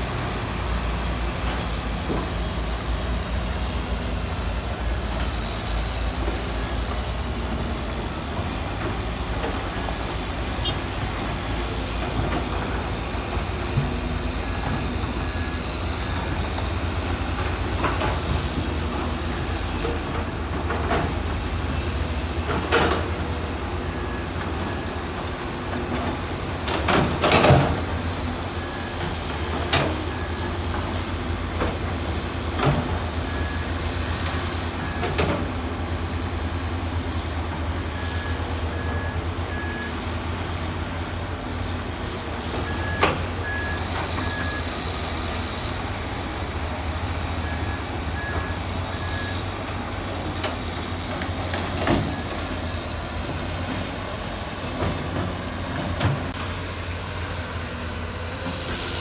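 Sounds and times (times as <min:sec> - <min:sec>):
diesel engine running: 0:00.0 - 0:59.0
reversing alarm beeping: 0:37.8 - 0:40.1, 0:42.5 - 0:45.3, 0:47.4 - 0:49.6.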